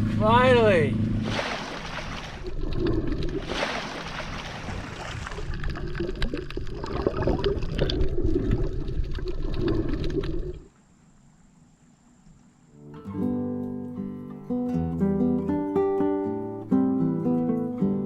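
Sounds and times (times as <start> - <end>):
water sloshing and gurgling: 1.0 - 10.7.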